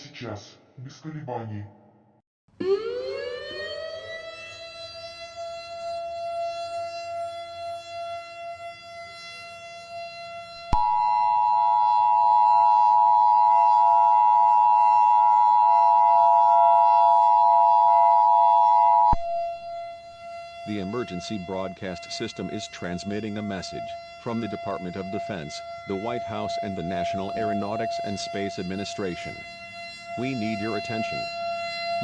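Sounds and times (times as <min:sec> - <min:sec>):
siren wailing: 0:02.6 - 0:32.0
two-tone attention signal: 0:10.7 - 0:20.0.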